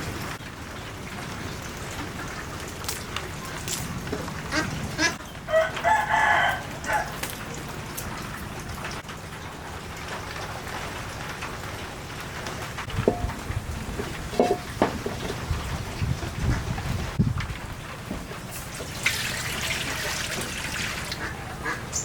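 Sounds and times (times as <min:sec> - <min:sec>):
steady rain: 0:00.0 - 0:18.9
rooster crowing: 0:05.5 - 0:07.2.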